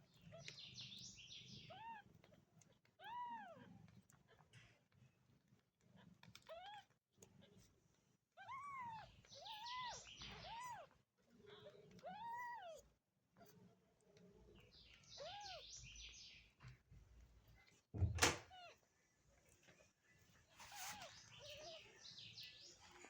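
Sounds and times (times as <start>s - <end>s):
cat meowing: 8.4s - 10.9s, 11.9s - 12.8s.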